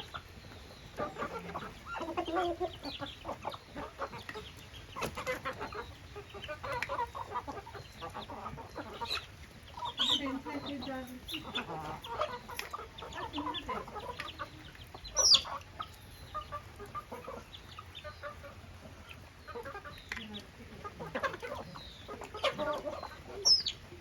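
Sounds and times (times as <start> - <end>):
chickens clucking: 0.0 - 24.0
chicken squawking: 5.0 - 24.0.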